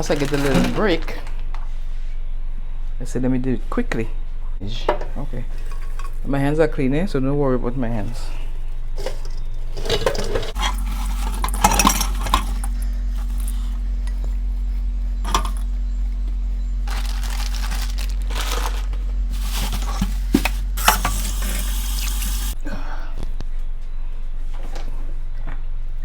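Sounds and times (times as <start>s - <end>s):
steady low hum: 0.0s - 24.4s
dishes and utensils clinking: 9.0s - 13.5s, 15.3s - 15.7s.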